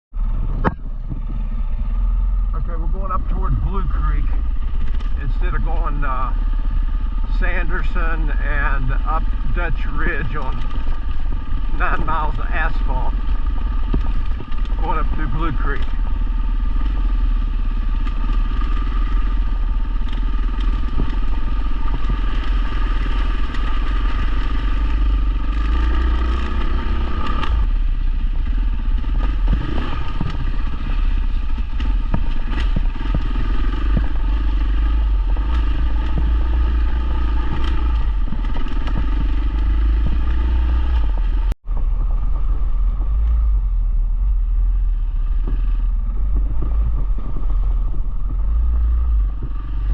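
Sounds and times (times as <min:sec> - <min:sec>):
motorcycle engine running: 0:00.1 - 0:49.9
wind rumble on microphone: 0:00.1 - 0:49.9.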